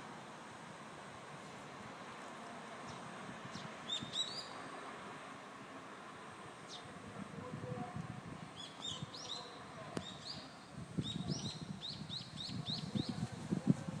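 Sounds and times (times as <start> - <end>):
songbird chirping: 2.8 - 4.9, 6.6 - 7.0, 8.5 - 13.3.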